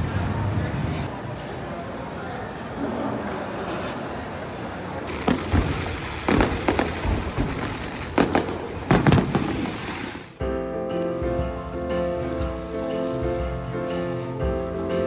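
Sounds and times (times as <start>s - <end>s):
fireworks bursting: 5.1s - 15.0s.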